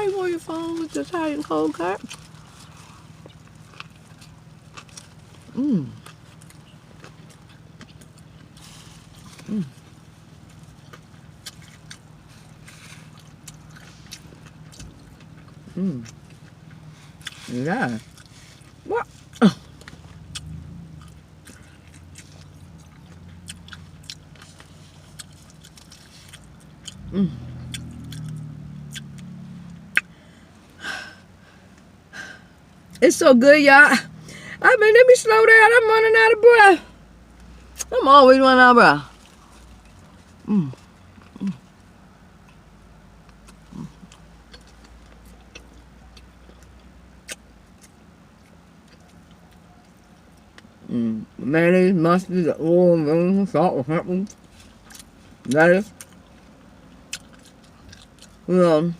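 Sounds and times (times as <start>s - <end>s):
steady low hum: 0.0s - 58.9s
person chewing: 0.8s - 33.0s, 39.1s - 51.0s, 54.3s - 58.5s
person humming low: 5.6s - 6.0s, 27.0s - 27.6s.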